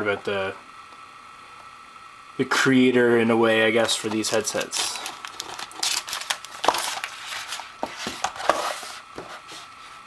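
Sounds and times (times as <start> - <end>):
paper rustling: 3.8 - 10.0.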